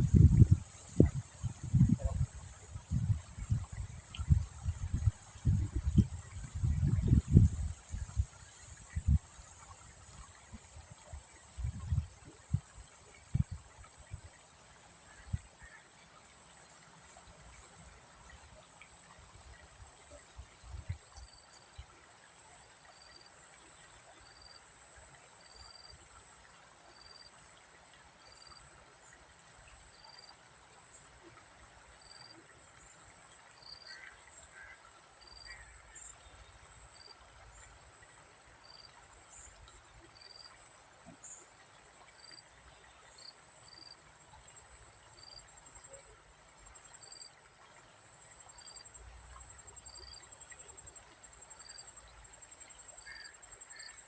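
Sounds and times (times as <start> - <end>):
insects trilling: 45.1 - 54.0.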